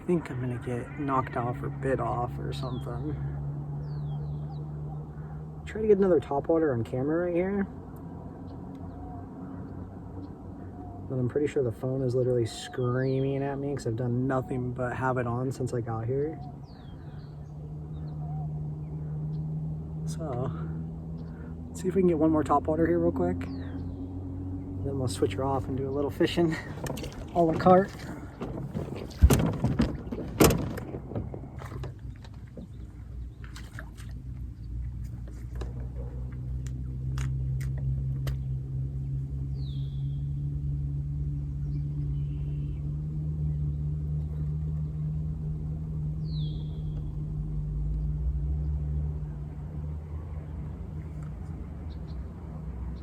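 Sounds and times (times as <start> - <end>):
boat motor humming: 0.0 - 53.0.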